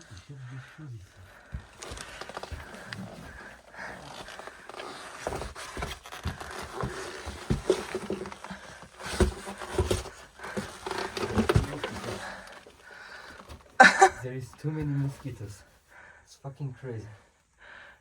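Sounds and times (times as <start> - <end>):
clothing rustling: 1.1 - 15.6
footsteps scraping on rock: 1.2 - 14.0.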